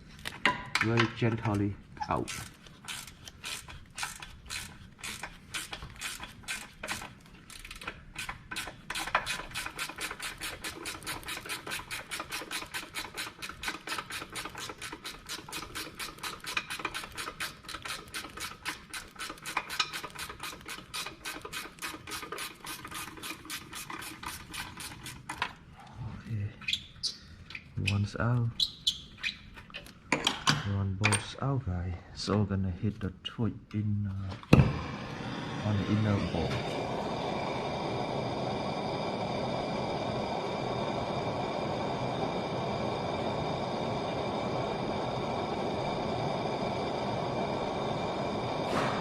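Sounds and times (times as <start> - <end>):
ratchet wrench clicking: 2.3 - 24.2.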